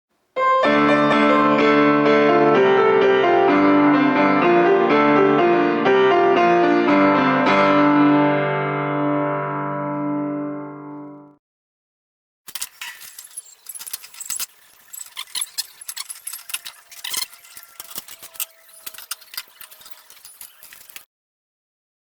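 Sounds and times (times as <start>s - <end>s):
metal clinking and rattling: 12.5s - 21.0s.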